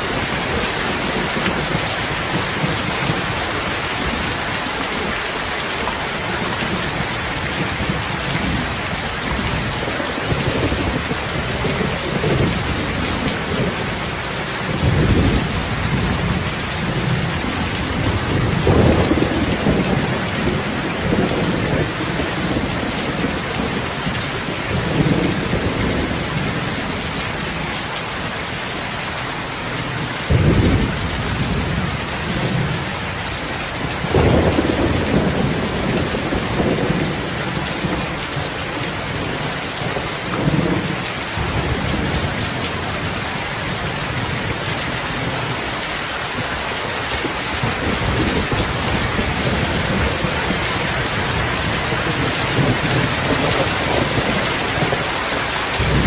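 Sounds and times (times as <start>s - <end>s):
heavy rain: 0.0s - 56.0s
low rumbles of thunder: 6.1s - 27.6s, 29.9s - 33.0s, 33.8s - 45.7s, 47.5s - 55.1s, 55.8s - 56.0s.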